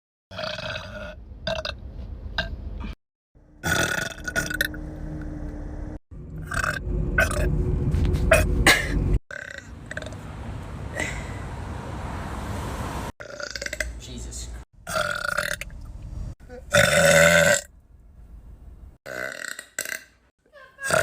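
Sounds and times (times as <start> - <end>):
loud human burps: 0.3 - 1.8, 3.6 - 4.7, 9.3 - 10.1, 13.2 - 14.0, 14.9 - 15.6, 16.7 - 17.7, 19.1 - 20.2.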